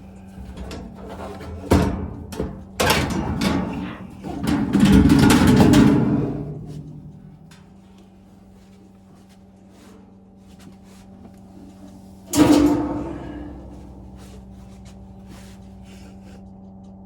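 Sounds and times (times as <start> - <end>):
steady low hum: 0.0 - 17.0
loud ringing bang: 12.3 - 14.6.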